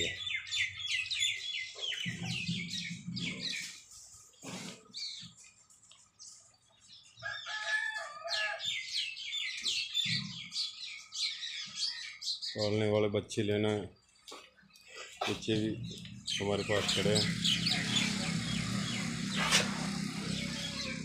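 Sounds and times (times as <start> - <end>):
small birds chirping: 0.0 - 21.0
rooster crowing: 7.2 - 8.7.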